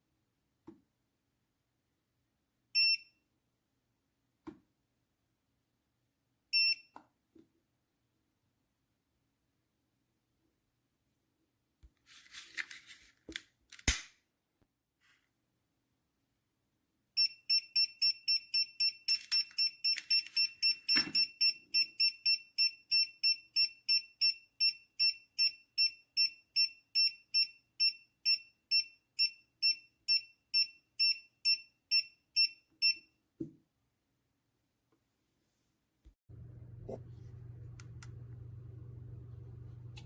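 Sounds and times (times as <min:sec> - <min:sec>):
gas detector alarm beeps: 0:06.6 - 0:06.9, 0:17.2 - 0:33.0.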